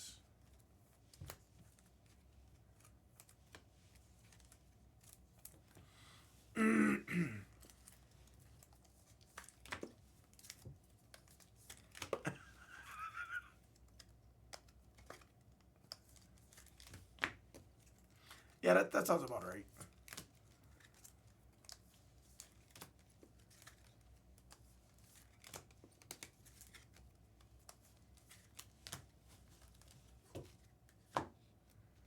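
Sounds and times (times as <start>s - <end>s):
short voice sound: 6.6s - 7.4s.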